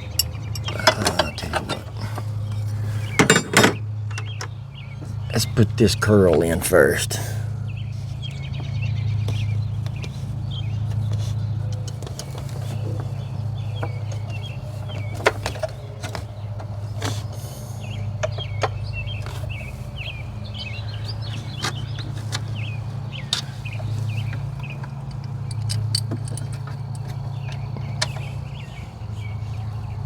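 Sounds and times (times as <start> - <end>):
metallic clicks and knocks: 0.0 - 2.4, 3.1 - 4.5, 24.3 - 28.3
small birds chirping: 0.0 - 30.0.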